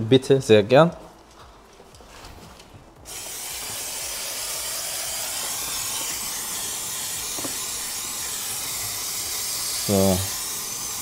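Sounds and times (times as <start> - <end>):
aerosol can spraying: 3.0 - 11.0.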